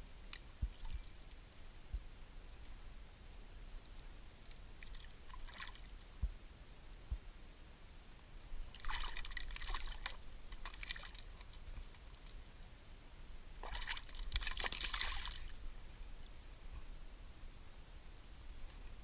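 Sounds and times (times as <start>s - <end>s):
water splashing and trickling: 4.4s - 6.1s, 8.6s - 12.4s, 13.6s - 15.6s.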